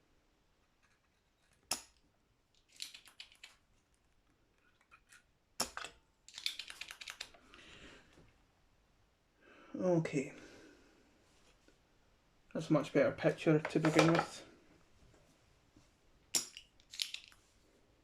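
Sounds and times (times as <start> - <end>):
soft rustle: 11.0 - 11.9.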